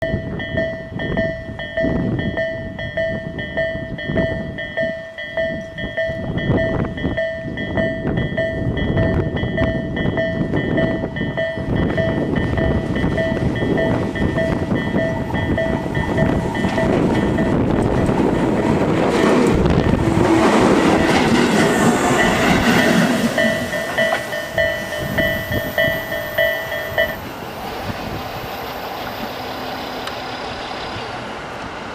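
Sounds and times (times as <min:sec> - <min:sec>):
train wheels running over crossing: 0:05.3 - 0:31.9
level crossing electronic bell: 0:22.2 - 0:27.2.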